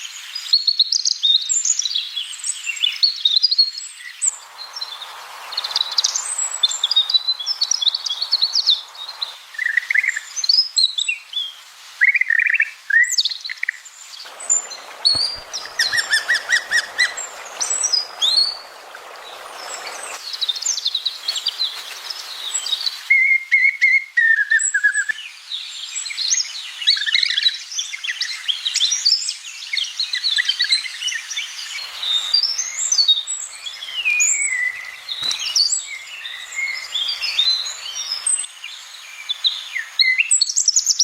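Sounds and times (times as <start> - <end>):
songbirds chirping and singing: 14.3 - 23.1
long held bird whistles: 14.3 - 25.2.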